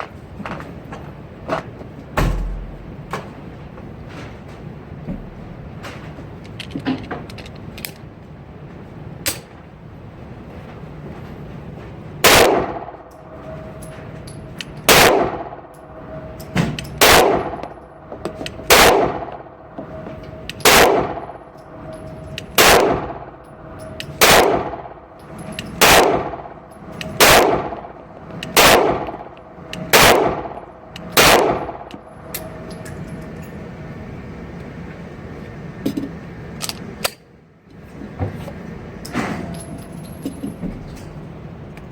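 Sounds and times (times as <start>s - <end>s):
pistol shots with echo: 12.2s - 13.0s, 14.9s - 15.7s, 17.0s - 17.8s, 18.6s - 19.6s, 20.6s - 21.5s, 22.6s - 23.4s, 24.2s - 25.1s, 25.8s - 31.9s.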